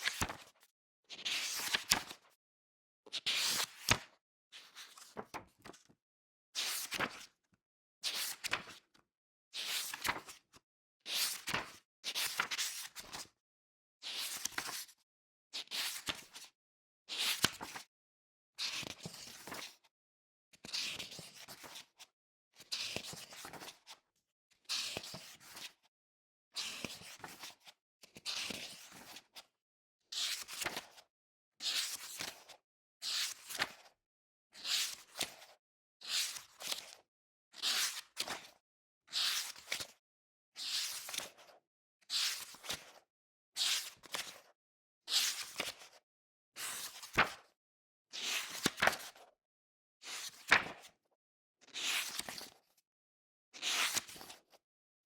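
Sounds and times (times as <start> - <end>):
book pages turning: 50.5 - 50.7.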